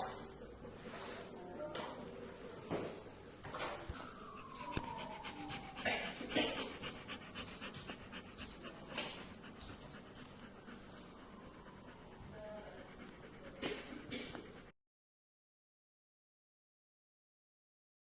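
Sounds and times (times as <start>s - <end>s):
dog panting: 3.9s - 14.7s
dog whining: 4.2s - 13.8s.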